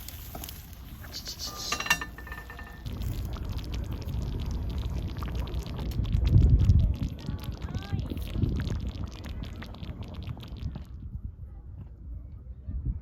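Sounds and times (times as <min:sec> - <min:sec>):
liquid being poured: 0:00.0 - 0:11.0
light metal clinks: 0:01.5 - 0:02.9.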